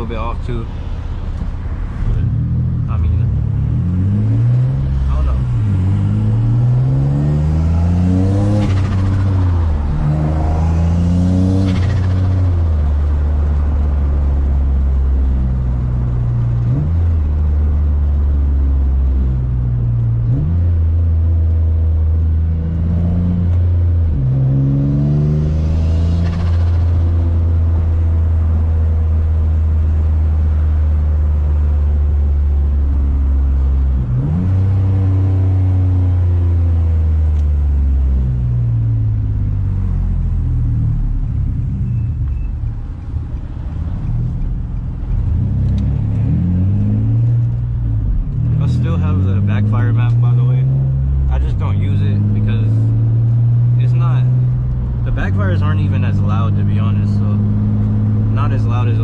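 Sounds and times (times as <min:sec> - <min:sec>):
car engine accelerating: 0:01.2 - 0:59.0.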